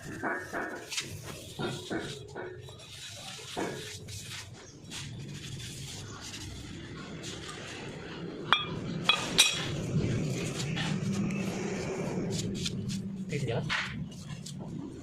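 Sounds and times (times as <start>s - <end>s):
low steady hum: 5.3s - 15.0s
metal tools clinking: 8.6s - 9.7s.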